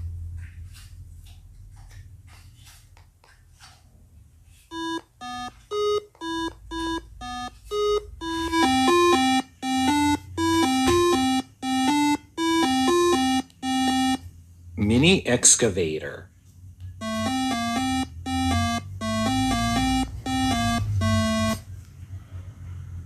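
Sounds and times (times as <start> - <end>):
electronic beeping tune: 4.7 - 14.2, 17.0 - 21.6.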